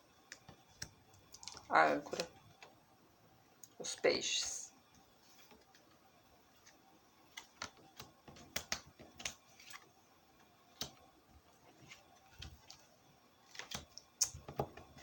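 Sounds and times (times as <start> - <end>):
cards clicking on a table: 7.3 - 9.8, 13.5 - 15.0.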